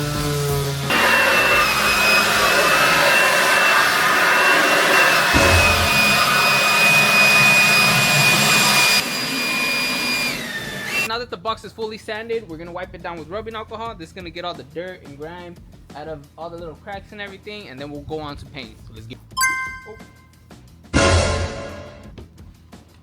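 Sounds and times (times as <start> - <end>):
sander sanding hiss: 0.9 - 11.0
electric sander whining: 0.9 - 11.1.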